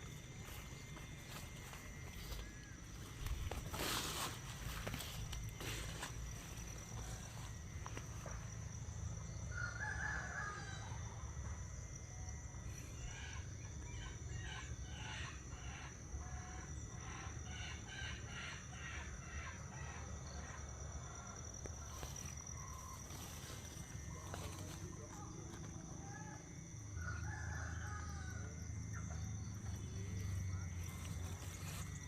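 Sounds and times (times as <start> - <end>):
rooster crowing: 9.5 - 11.1, 26.8 - 28.8.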